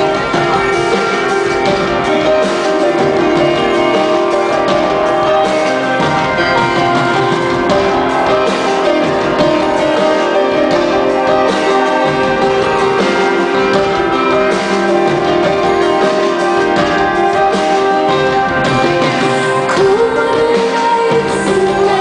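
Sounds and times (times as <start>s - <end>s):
keyboard playing: 0.0s - 22.0s
live band playing: 0.0s - 22.0s.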